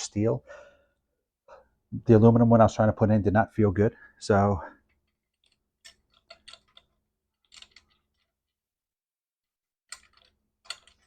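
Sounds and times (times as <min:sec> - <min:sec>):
small metal parts clicking: 0:04.8 - 0:08.6, 0:09.9 - 0:11.0.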